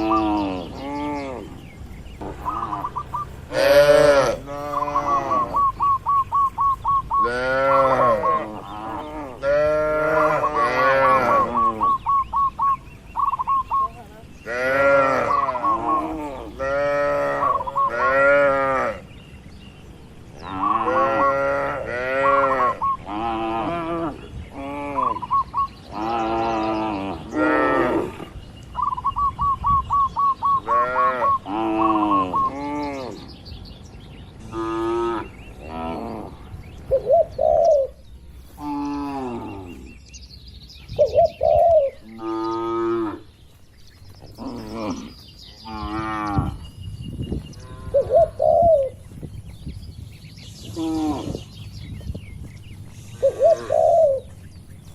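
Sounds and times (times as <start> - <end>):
cattle mooing: 3.5 - 5.8, 7.2 - 12.0, 14.4 - 19.0, 20.5 - 25.2.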